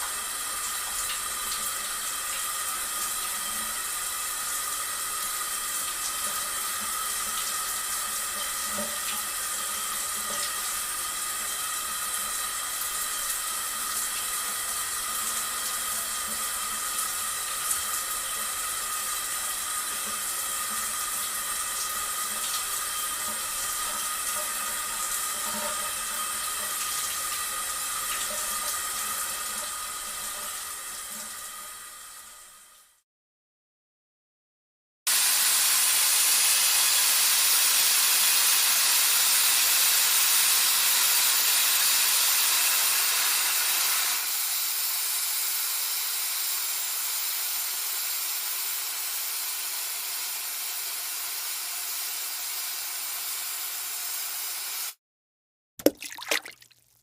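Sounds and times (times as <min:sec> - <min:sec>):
rushing water: 0:55.8 - 0:56.8.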